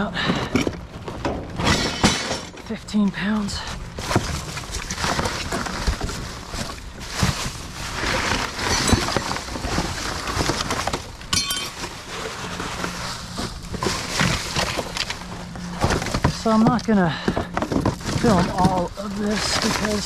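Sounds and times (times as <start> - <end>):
ringing metallic clink: 11.4 - 11.8.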